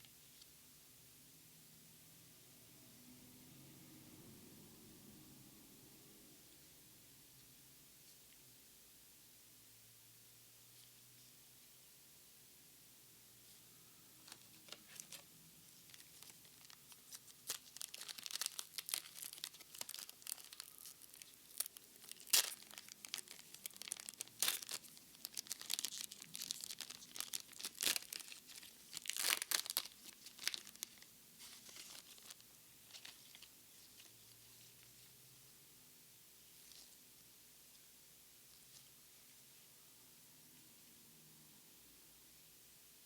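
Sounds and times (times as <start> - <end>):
foil wrapper tearing and crinkling: 15.8 - 34.1.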